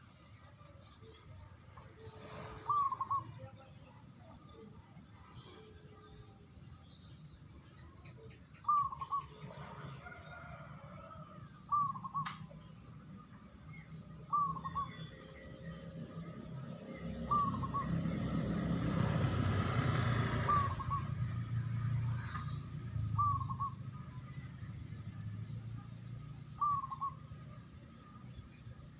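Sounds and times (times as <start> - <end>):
dove cooing: 2.3 - 3.4, 8.6 - 11.1, 11.7 - 12.4, 14.3 - 15.0, 17.3 - 18.0, 20.3 - 21.1, 23.2 - 23.8, 26.6 - 27.3.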